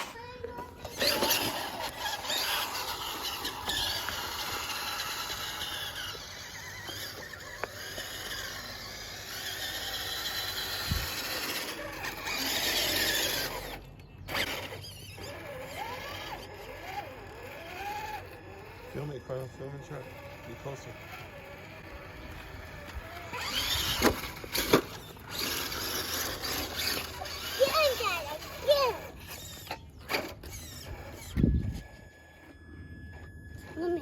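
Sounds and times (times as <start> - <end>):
remote-control truck motor whining: 0.0 - 34.0.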